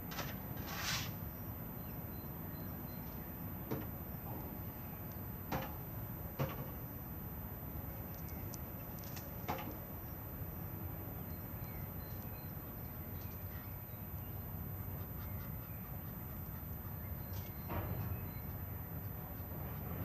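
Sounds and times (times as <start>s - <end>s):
small birds chirping: 8.0s - 9.0s, 11.2s - 20.0s.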